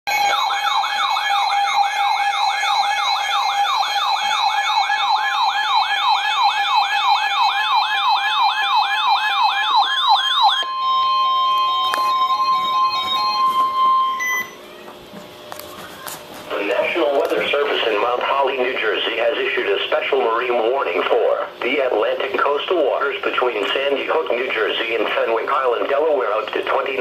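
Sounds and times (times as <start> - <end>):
rising siren sweep alarm: 0.1 - 14.9
steady high alert tone: 9.3 - 14.9.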